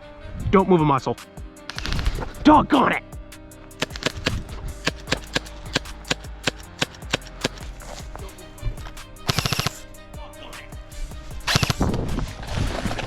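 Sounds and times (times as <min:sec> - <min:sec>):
airsoft gun shots: 0:03.8 - 0:07.9.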